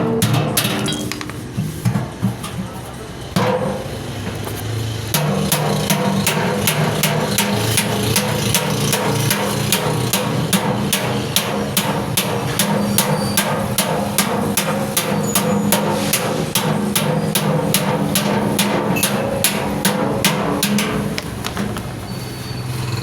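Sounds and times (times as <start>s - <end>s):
hammer striking an anvil: 5.1s - 21.6s.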